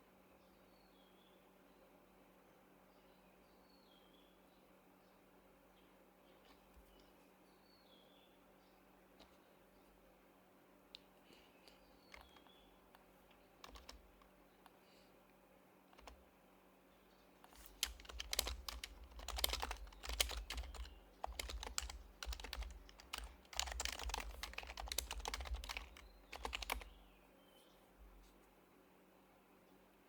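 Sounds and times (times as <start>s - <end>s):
typing on a keyboard: 12.1s - 12.6s, 13.6s - 14.3s, 16.0s - 16.2s, 17.5s - 27.0s.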